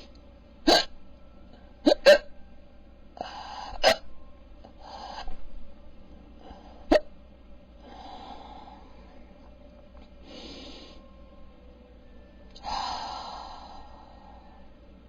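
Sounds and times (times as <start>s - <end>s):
man breathing: 7.8s - 9.3s, 10.2s - 11.2s, 12.6s - 14.7s.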